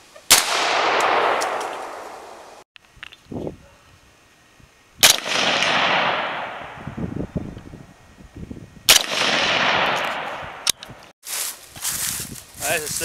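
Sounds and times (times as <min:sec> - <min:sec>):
rifle shots with echo: 0:00.3 - 0:02.6, 0:05.0 - 0:06.9, 0:08.9 - 0:10.7.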